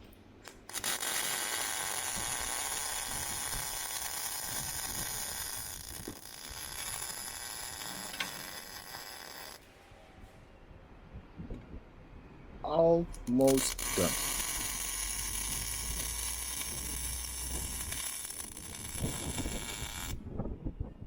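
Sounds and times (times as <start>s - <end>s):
welding arc crackling: 0.4s - 9.6s, 13.2s - 20.2s.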